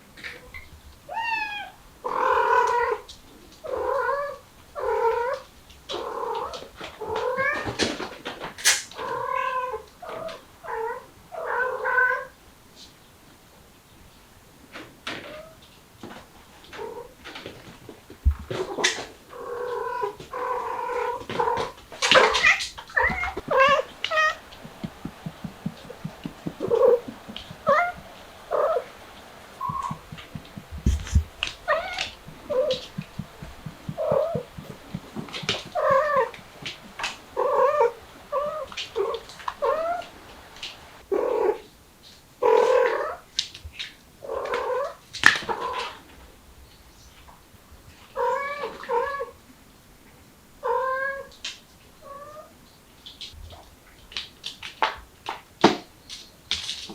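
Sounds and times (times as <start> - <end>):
cat meowing and caterwauling: 1.1 - 3.0, 19.4 - 28.9, 29.6 - 36.3
low thumps: 18.2 - 18.7, 22.9 - 37.8
low fast pulsing: 23.0 - 38.5.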